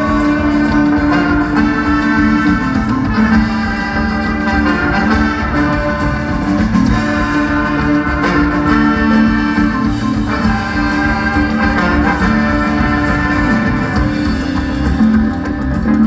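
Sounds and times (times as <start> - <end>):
bass: 0.0 - 16.0
drums: 0.0 - 16.0
organ-like keyboard chords: 0.0 - 16.0.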